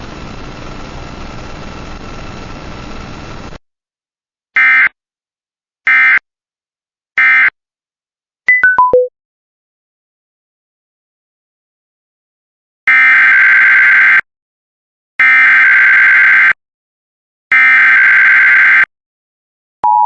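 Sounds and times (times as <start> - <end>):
steady hiss: 0.0 - 3.6
beeps stepping down in pitch: 8.5 - 9.1.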